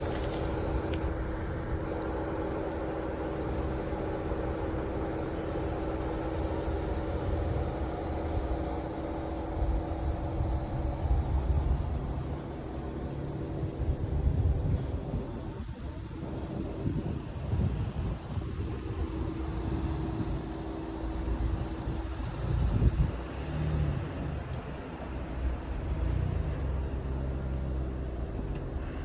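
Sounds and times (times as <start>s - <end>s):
vehicle engine rumbling: 0.0s - 29.0s.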